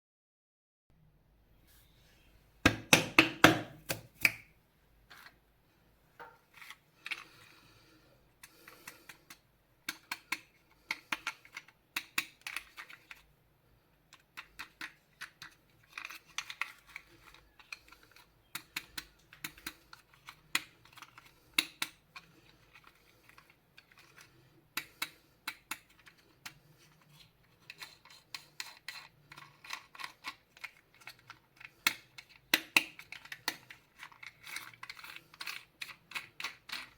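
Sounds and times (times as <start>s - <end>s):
packaging clicks and rustles: 14.2s - 36.9s.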